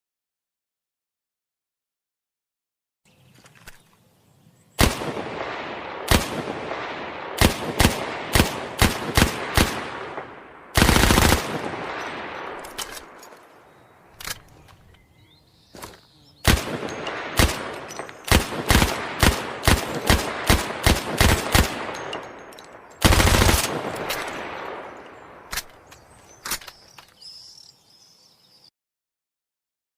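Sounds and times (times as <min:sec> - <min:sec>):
gunshot echo: 0:04.8 - 0:13.2, 0:16.5 - 0:22.3
submachine gun firing: 0:04.8 - 0:13.2, 0:16.4 - 0:22.3, 0:23.0 - 0:25.0
metallic reloading clicks: 0:12.0 - 0:13.5.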